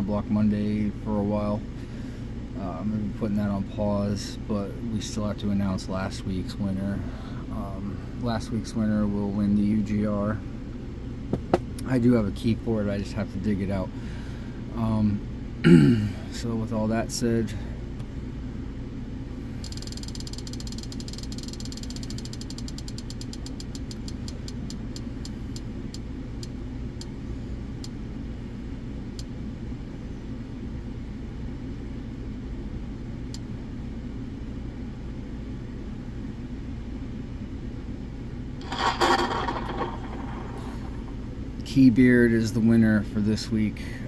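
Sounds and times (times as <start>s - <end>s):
burst of noise: 38.6s - 41.2s
low hum: 38.6s - 41.8s.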